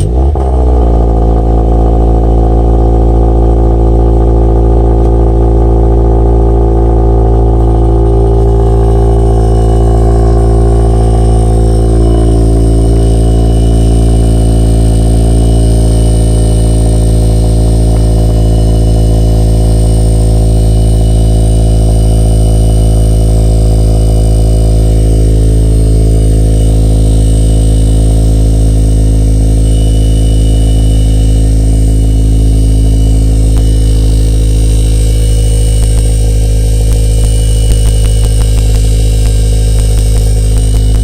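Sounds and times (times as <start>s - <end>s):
exhaust rattle: 0.0s - 41.0s
vehicle engine idling: 0.0s - 41.0s.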